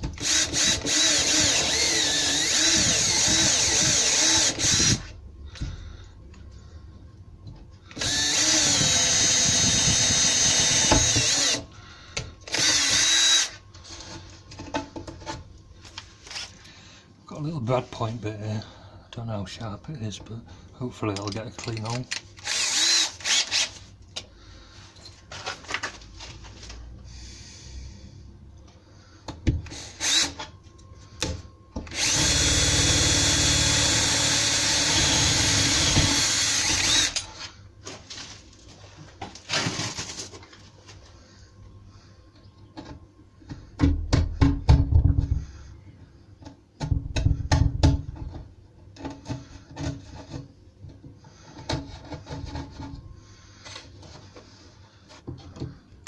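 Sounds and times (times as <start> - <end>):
power drill boring into wood: 0.2 - 5.1, 8.0 - 11.6, 12.5 - 13.6, 22.4 - 23.7, 29.8 - 30.4, 31.9 - 37.2
handling clicks and knocks: 21.1 - 22.3.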